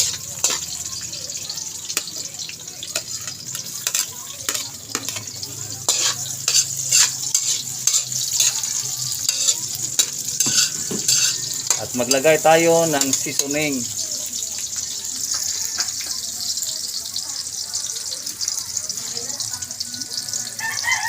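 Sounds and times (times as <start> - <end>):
food sizzling in hot oil: 0.0 - 21.0
utensil scraping and tapping pan: 3.0 - 12.2.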